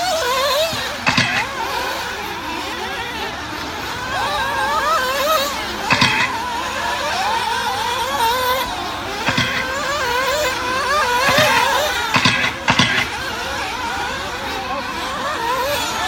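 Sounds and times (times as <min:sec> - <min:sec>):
rc car engines screaming: 0:00.0 - 0:16.0
sharp knocks: 0:00.7 - 0:01.8, 0:05.9 - 0:06.4, 0:09.2 - 0:10.6, 0:11.2 - 0:13.2.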